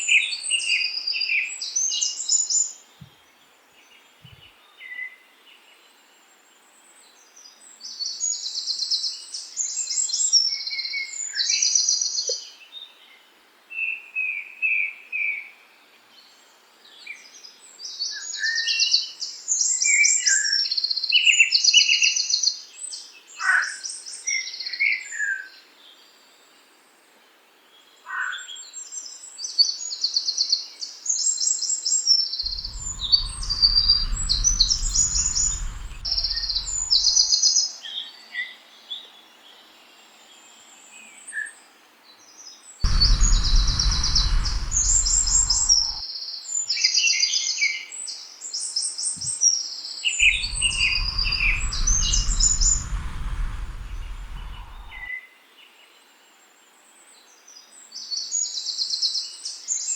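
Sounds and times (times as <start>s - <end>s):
low rumble: 32.5s - 37.2s, 42.9s - 46.0s, 50.2s - 55.1s.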